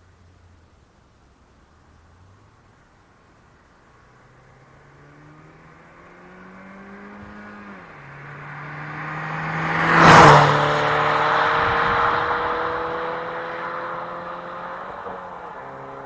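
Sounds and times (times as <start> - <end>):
car accelerating past: 3.8 - 16.0.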